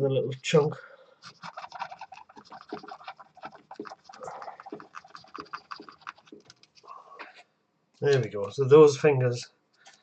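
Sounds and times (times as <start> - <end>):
scratchy rubbing of circuit board: 1.2 - 6.9.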